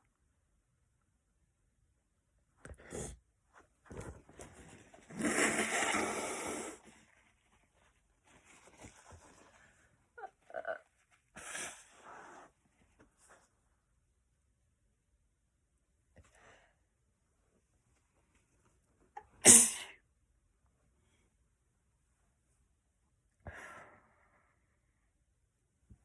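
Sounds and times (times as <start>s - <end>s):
breathing and sniffing: 5.1s - 7.0s, 11.4s - 12.6s
girl sneezing: 19.4s - 20.0s.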